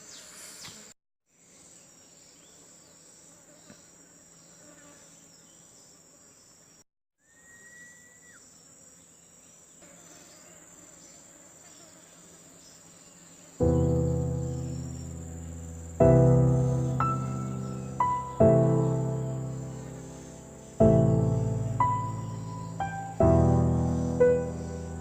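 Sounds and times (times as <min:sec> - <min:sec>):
insects chirring: 0:00.0 - 0:25.0
short high whistle: 0:07.2 - 0:08.4.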